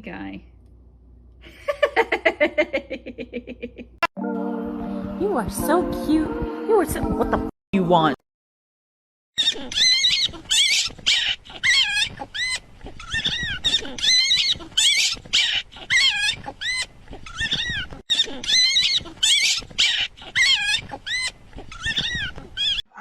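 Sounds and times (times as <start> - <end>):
small animal squealing: 9.4 - 23.0.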